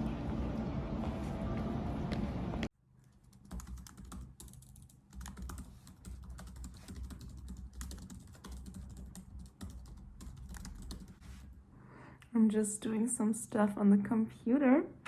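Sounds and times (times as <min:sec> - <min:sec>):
typing on computer keyboard: 0:03.2 - 0:11.2.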